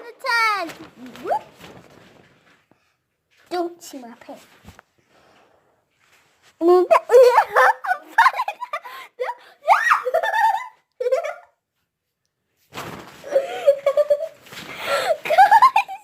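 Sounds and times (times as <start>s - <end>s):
rustling: 0.2s - 7.1s, 12.6s - 16.0s
girl laughing and squealing: 6.7s - 11.5s, 13.3s - 16.0s.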